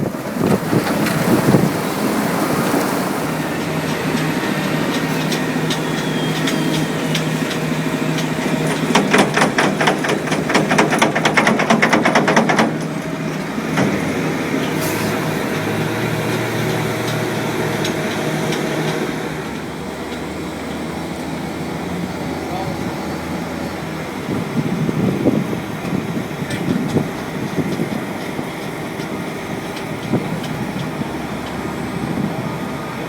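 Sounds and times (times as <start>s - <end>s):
diesel construction machinery running: 0.0s - 33.0s
metallic clattering knocks: 4.1s - 14.8s.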